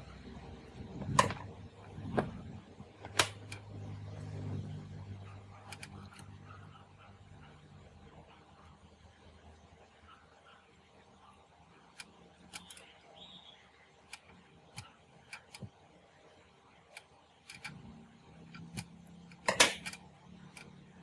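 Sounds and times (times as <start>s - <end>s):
faint low hum: 0.0s - 21.0s
cassette player clicks and knocks: 1.0s - 1.5s, 19.4s - 20.0s.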